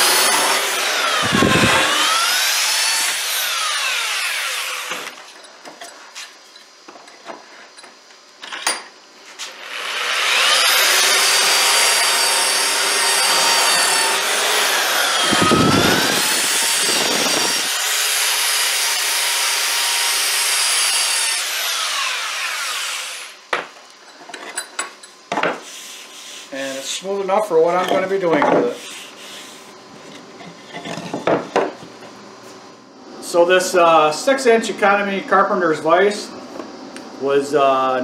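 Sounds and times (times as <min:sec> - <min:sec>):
power tool cutting wood: 0:00.0 - 0:05.2, 0:09.4 - 0:23.4.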